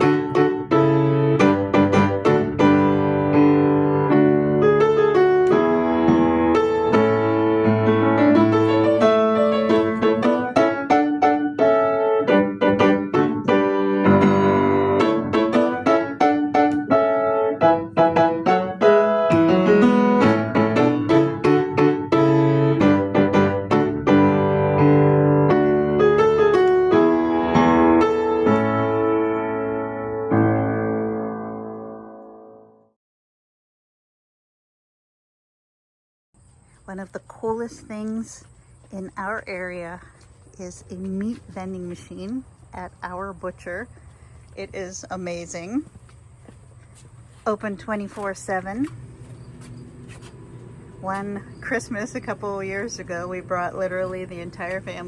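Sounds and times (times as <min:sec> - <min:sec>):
piano music: 0:00.0 - 0:32.9, 0:49.0 - 0:55.0.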